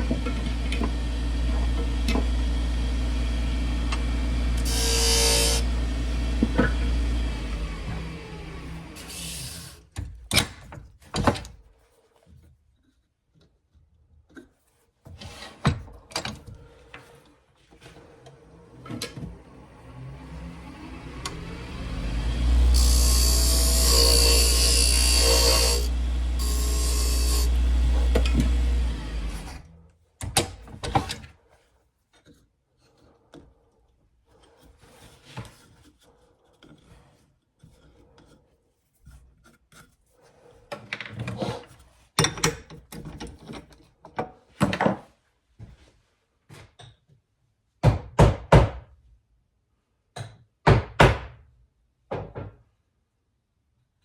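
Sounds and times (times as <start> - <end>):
power tool motor humming: 0.1 - 9.8, 19.9 - 29.7
wood rubbing and scraping: 4.0 - 7.0, 19.3 - 29.7.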